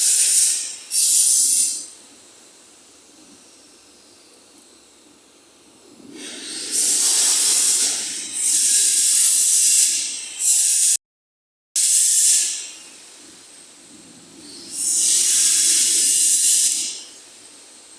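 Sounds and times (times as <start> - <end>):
milling machine cutting metal: 14.7 - 17.1.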